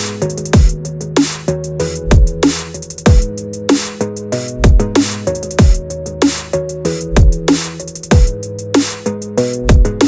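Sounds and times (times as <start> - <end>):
hi-hat ticks: 0.0 - 10.0
deep kick drums: 0.6 - 0.8, 2.1 - 2.4, 3.1 - 3.4, 4.6 - 5.0, 5.6 - 5.8, 7.2 - 7.5, 8.1 - 8.4, 9.7 - 10.0.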